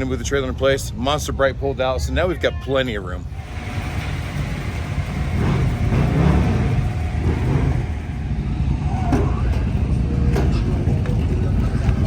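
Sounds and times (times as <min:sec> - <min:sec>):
vehicle engine running: 0:03.3 - 0:12.0.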